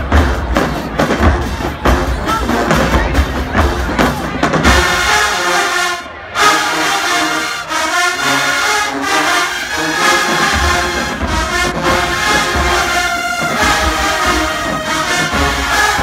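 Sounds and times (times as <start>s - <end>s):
bass drums: 0.0s - 5.2s
brass section playing chords: 4.6s - 16.0s.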